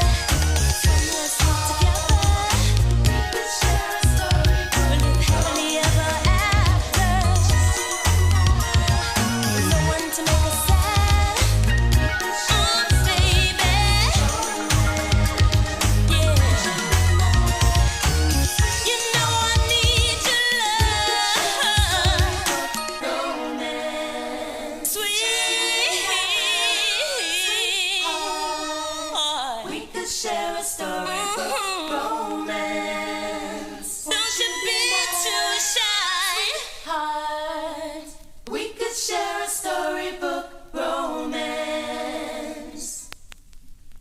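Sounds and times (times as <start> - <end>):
women singing in harmony: 0.0 - 43.1.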